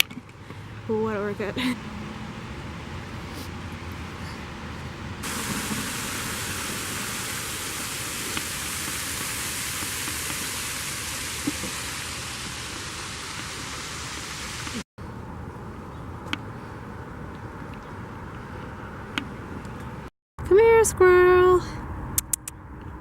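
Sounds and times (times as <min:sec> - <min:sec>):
waterfall rushing: 0:05.2 - 0:14.8.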